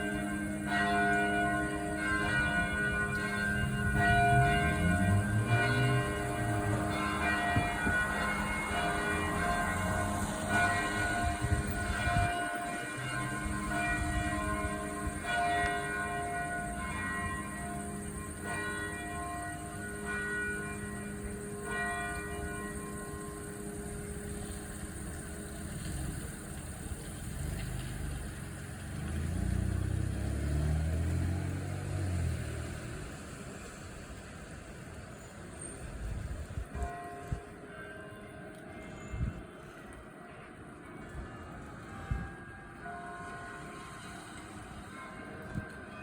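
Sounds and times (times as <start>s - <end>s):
church bell tolling: 0.0s - 26.3s, 36.8s - 46.0s.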